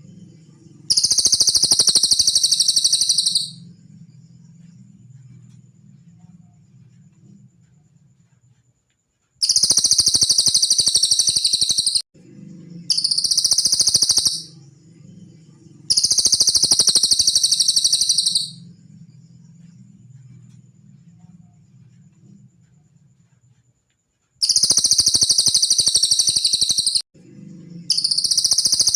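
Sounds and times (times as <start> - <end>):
low steady hum: 0.0 - 1.0, 3.5 - 8.5, 12.2 - 13.1, 14.5 - 15.9, 18.6 - 23.4
bird trilling: 0.9 - 3.6, 9.4 - 12.0, 12.9 - 14.6, 15.9 - 18.6, 24.4 - 27.0, 27.9 - 28.9.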